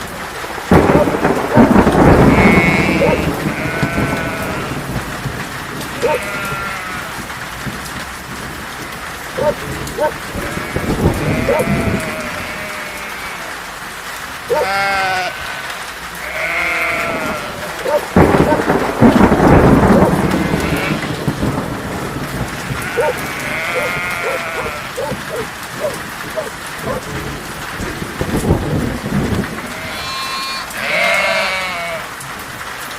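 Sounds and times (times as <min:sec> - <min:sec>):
thunderclap rumbling: 0:00.0 - 0:13.4, 0:16.2 - 0:32.8
steady rain falling: 0:00.0 - 0:32.9
sheep bleating: 0:02.2 - 0:04.8, 0:06.0 - 0:07.2, 0:09.4 - 0:13.6, 0:14.5 - 0:18.6, 0:20.3 - 0:21.2, 0:22.7 - 0:26.0, 0:29.7 - 0:32.1.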